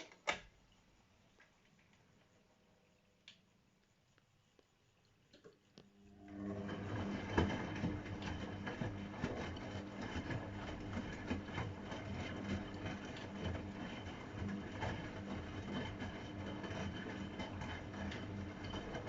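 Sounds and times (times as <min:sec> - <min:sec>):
faint clicks: 0:03.2 - 0:05.9
washing machine motor hum: 0:04.9 - 0:19.0.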